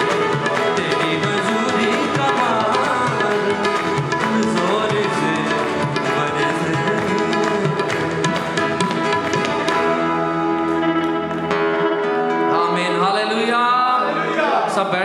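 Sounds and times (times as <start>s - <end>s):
hand drum rhythm: 0.0s - 12.0s
held keyboard chords: 0.0s - 13.4s.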